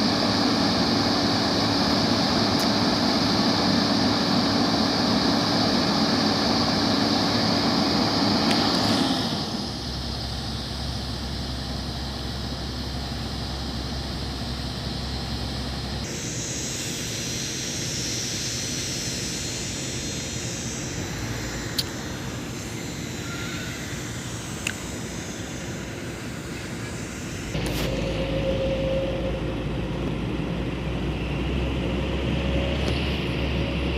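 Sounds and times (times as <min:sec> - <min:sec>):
heavy machinery engine noise: 0:00.0 - 0:33.9
sharp clicks: 0:21.7 - 0:22.0, 0:24.6 - 0:24.8.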